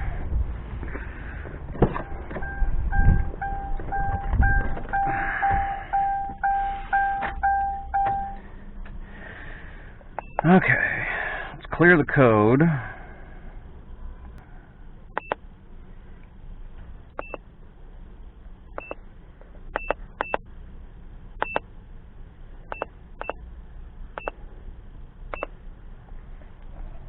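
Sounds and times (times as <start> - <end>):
scan tool beeping: 2.0 - 8.4.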